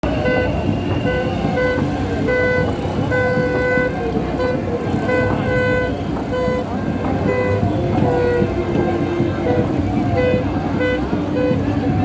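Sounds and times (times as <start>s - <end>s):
horn blasts: 0.0s - 12.0s
loud crowd din: 0.0s - 12.0s.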